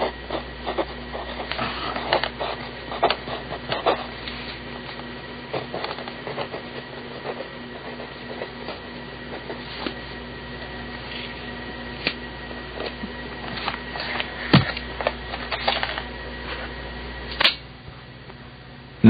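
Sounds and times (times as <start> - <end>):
pencil scratching on paper: 0.0 - 10.0
steady low hum: 0.0 - 19.0.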